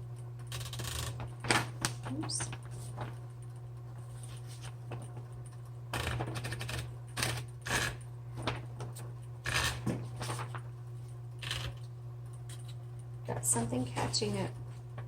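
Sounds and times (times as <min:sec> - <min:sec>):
typewriter motor humming: 0:00.4 - 0:02.6, 0:05.9 - 0:08.6, 0:09.4 - 0:10.5, 0:11.3 - 0:11.9
paper rustling: 0:01.2 - 0:03.2, 0:04.0 - 0:05.3, 0:08.3 - 0:11.1.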